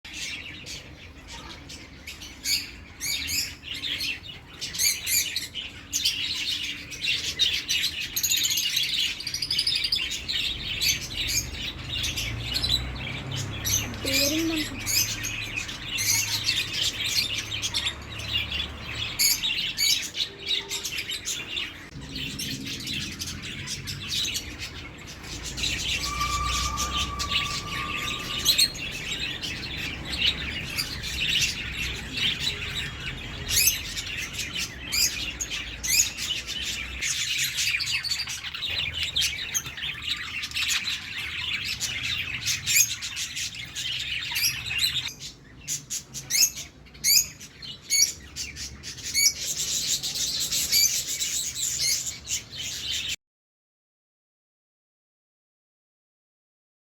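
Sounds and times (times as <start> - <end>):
small birds chirping: 0.0 - 53.2
steady bird note: 25.5 - 29.9.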